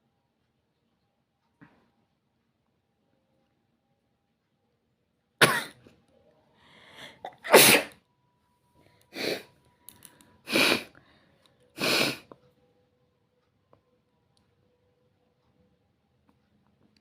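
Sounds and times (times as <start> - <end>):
person sneezing: 5.4 - 5.7, 7.2 - 7.9, 9.2 - 9.5, 10.5 - 10.9, 11.8 - 12.2
in-breath: 6.5 - 7.3, 8.8 - 12.4.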